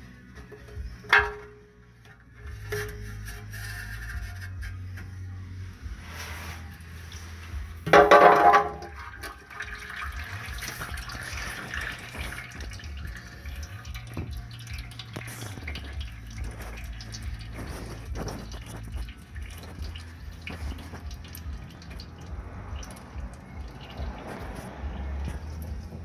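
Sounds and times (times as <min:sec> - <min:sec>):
fluid pouring and dripping: 0:07.0 - 0:26.0.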